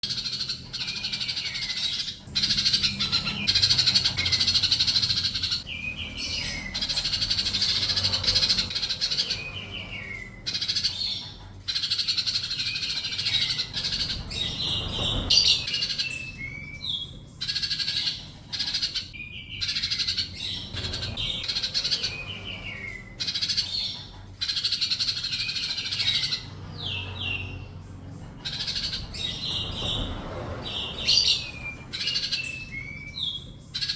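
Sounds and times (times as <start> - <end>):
bird twittering: 0.0 - 33.9.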